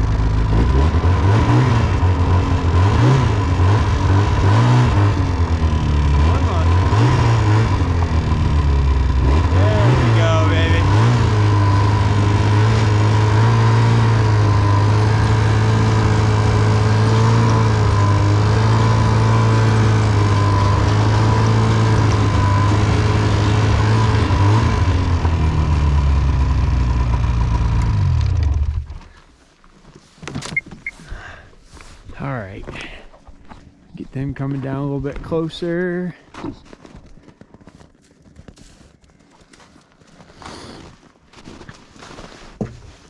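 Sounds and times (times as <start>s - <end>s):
vehicle engine running: 0.0s - 29.4s.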